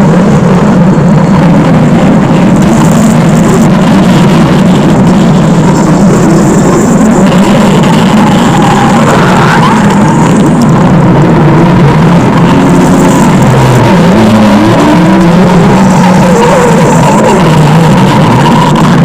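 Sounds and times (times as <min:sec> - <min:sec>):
stomach growling: 0:00.0 - 0:19.0.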